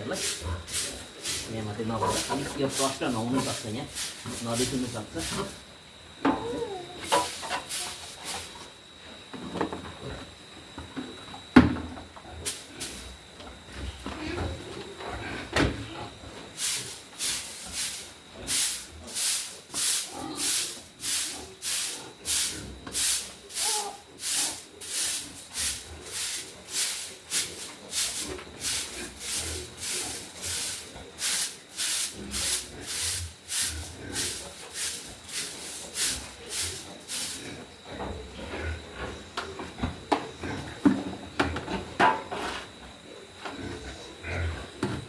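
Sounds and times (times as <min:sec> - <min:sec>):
broom sweeping floor: 0:00.0 - 0:05.7, 0:07.0 - 0:08.8, 0:12.4 - 0:13.2, 0:16.3 - 0:37.7, 0:42.0 - 0:42.8.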